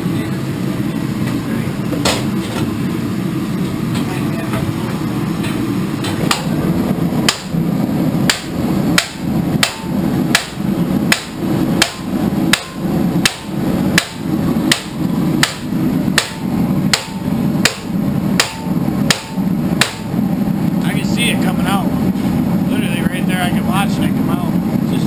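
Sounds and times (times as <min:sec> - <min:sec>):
steady low rumble: 0:00.0 - 0:25.0.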